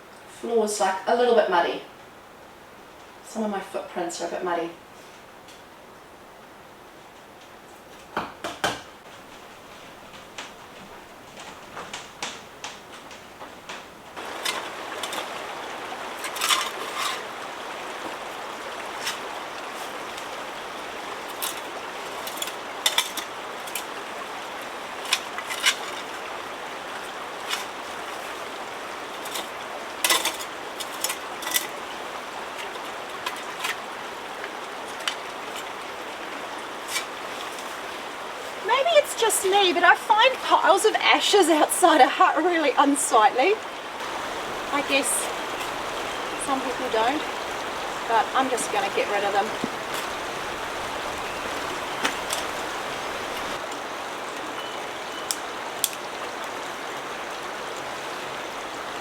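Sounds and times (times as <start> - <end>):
water rushing: 14.1 - 59.0
metal bucket clinks and scrapes: 14.2 - 15.4, 16.1 - 17.4, 21.3 - 23.9, 29.2 - 31.8.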